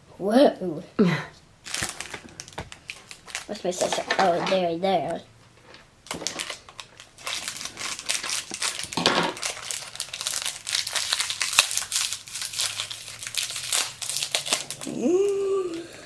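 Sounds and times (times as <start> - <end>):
plastic packaging crinkling: 1.6 - 4.9, 5.6 - 15.4.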